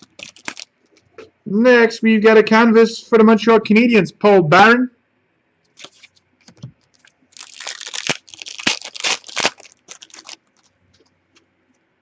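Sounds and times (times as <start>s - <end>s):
wrapper tearing and crinkling: 0.0s - 0.7s, 5.8s - 6.2s, 6.8s - 11.0s.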